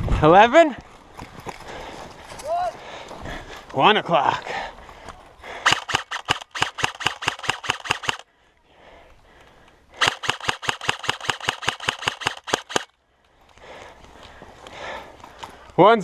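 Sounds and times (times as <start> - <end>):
airsoft gun firing bursts: 5.6 - 8.2, 10.0 - 12.9.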